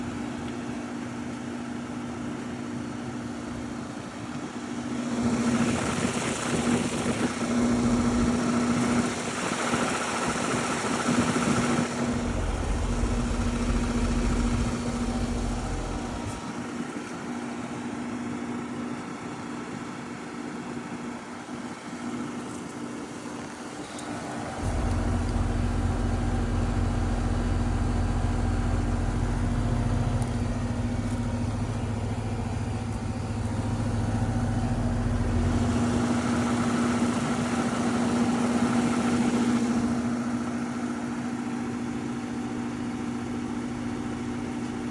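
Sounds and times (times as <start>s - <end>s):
air conditioner humming: 4.6s - 9.0s, 11.1s - 17.1s, 23.0s - 41.0s
rush of air: 11.8s - 16.5s
low rumble: 11.9s - 16.5s, 24.6s - 37.1s.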